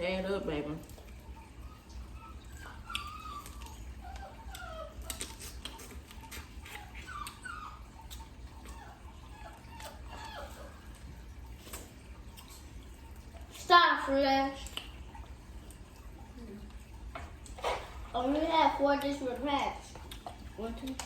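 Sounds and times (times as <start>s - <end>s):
dog whimpering: 1.2s - 11.4s.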